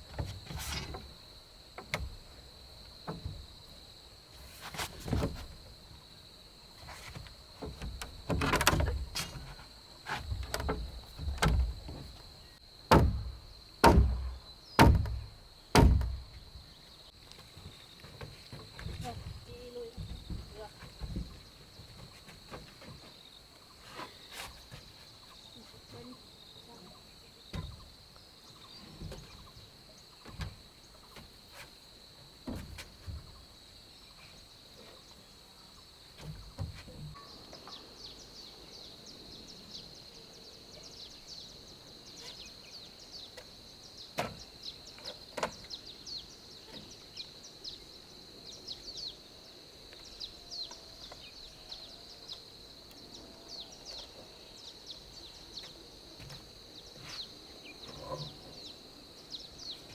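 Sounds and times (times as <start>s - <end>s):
knocks and thuds: 7.1s - 9.5s, 10.1s - 12.2s, 12.9s - 16.5s
birds chirping: 34.0s - 59.9s.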